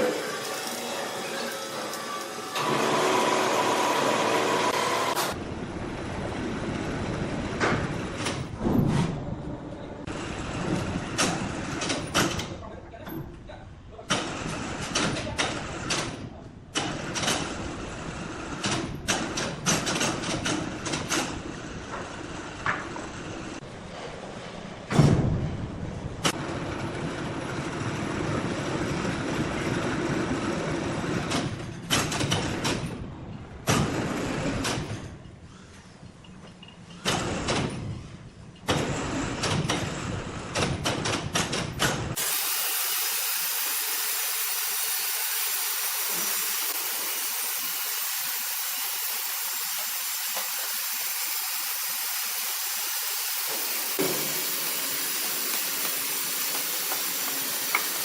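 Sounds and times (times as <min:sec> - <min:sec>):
sawmill machinery running: 0:00.0 - 0:08.2, 0:42.2 - 0:58.0
steady hiss: 0:42.2 - 0:58.0.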